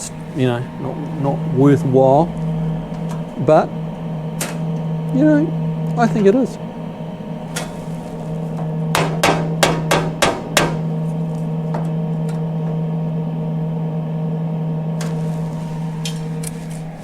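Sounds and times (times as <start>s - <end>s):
steady low hum: 0.0s - 17.0s
hammer blows on sheet steel: 7.6s - 11.0s.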